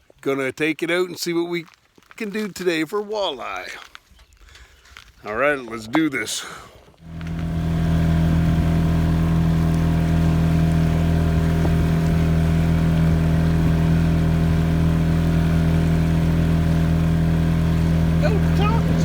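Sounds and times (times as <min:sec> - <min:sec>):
boat motor droning: 0:07.0 - 0:19.0.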